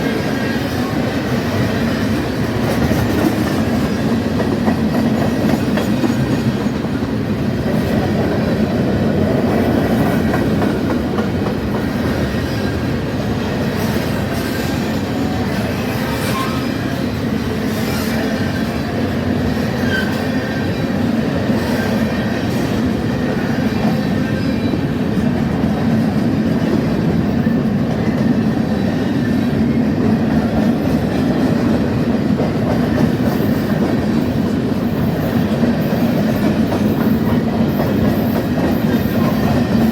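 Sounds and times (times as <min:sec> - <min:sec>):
freight train cars rumbling: 0:00.0 - 0:39.9
brief wheel squeals: 0:16.0 - 0:16.9, 0:19.7 - 0:20.9.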